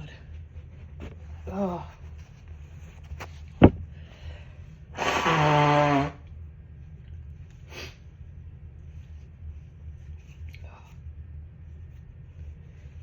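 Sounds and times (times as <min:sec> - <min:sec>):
person blowing nose: 0:05.0 - 0:06.2
short sniff: 0:05.0 - 0:06.2.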